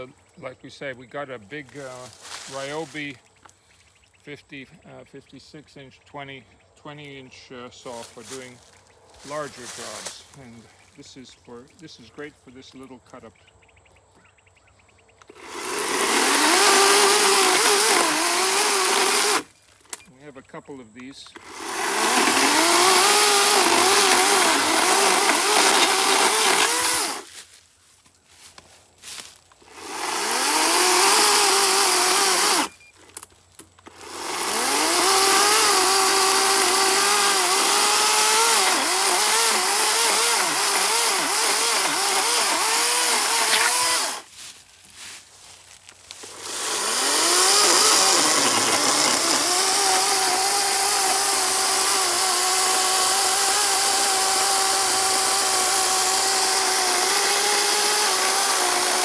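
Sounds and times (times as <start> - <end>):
electric chainsaw cutting wood: 15.2 - 19.6, 21.4 - 27.3, 29.6 - 32.8, 33.8 - 44.3, 46.1 - 59.0.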